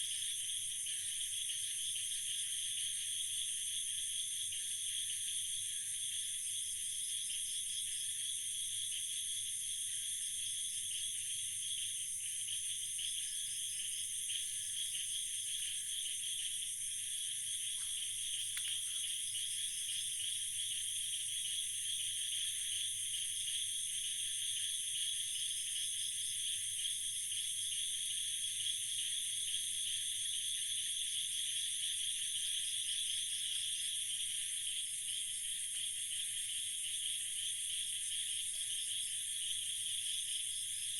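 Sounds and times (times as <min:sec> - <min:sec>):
insects trilling: 0:17.4 - 0:24.0.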